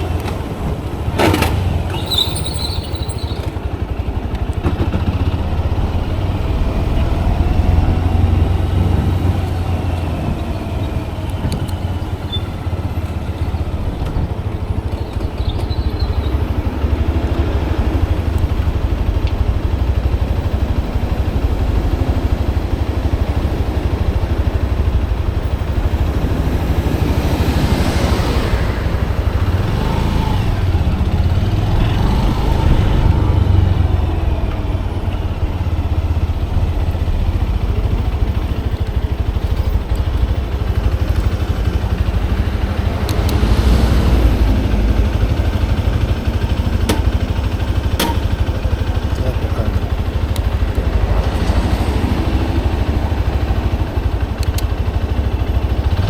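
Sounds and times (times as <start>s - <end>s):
motorcycle engine running: 0.0s - 56.0s.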